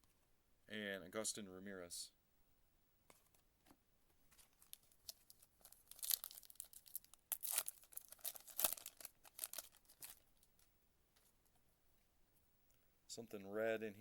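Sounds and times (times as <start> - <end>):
wrapper tearing and crinkling: 4.5 - 10.6.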